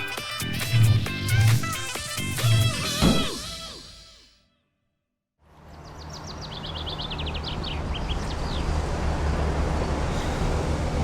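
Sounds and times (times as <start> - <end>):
small bird chirping: 5.7 - 8.7.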